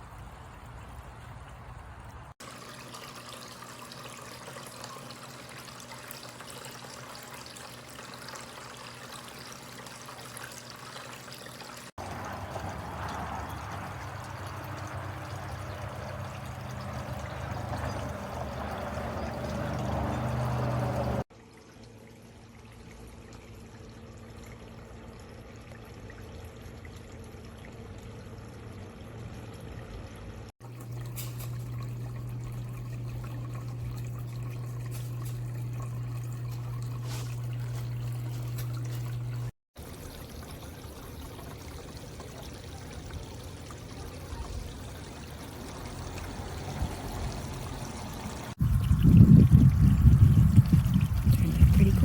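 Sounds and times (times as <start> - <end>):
fountain water trickling: 0.0 - 52.0
steady low hum: 30.7 - 39.5.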